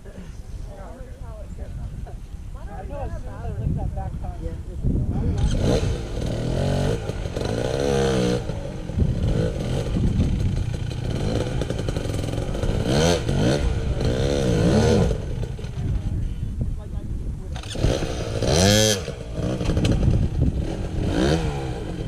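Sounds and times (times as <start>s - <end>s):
motorcycle engine revving: 5.1s - 22.0s.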